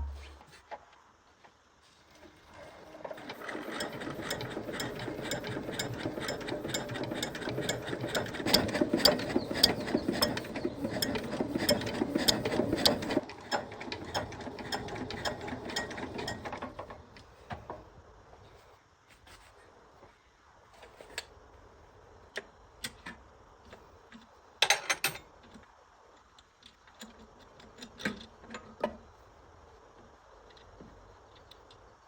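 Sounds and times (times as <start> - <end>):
rapid mechanical ratcheting clicks: 3.4 - 16.4.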